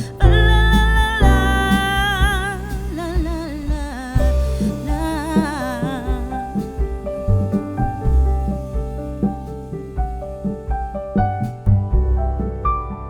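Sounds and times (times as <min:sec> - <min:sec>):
song with singing over a beat: 0:00.0 - 0:07.2.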